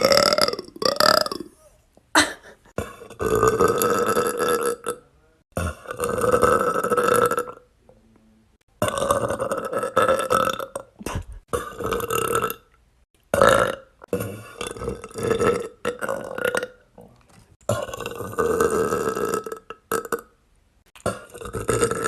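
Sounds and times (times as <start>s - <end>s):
girl burping loudly: 0.0s - 5.0s, 13.3s - 16.8s.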